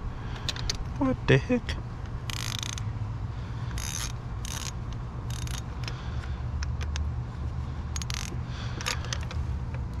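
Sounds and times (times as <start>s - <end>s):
steady low hum: 0.0s - 10.0s
hand tools clicking and scraping: 2.0s - 2.9s, 3.6s - 7.2s, 7.8s - 10.0s.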